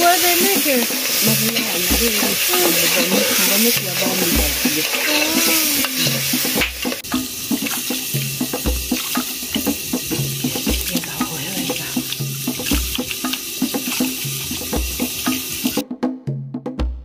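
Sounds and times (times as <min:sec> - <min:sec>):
water running from a tap: 0:00.0 - 0:15.8
background music with bass: 0:03.8 - 0:17.0.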